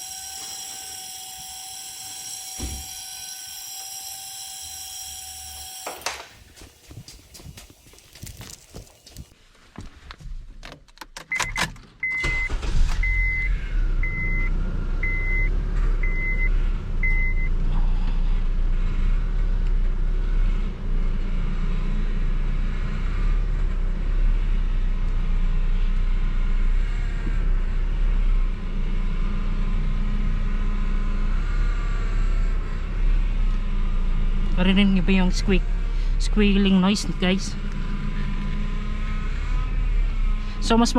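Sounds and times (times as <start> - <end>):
car engine starting and idling: 10.9 - 40.9.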